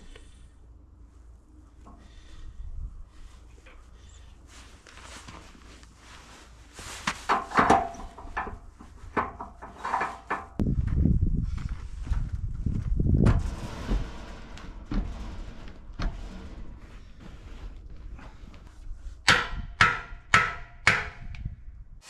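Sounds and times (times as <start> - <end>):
wood knocking and scraping: 7.0 - 10.6
low rumble: 10.6 - 19.8.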